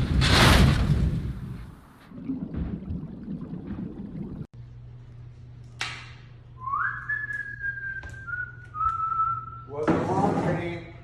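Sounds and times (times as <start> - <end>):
person whistling: 6.6 - 9.7.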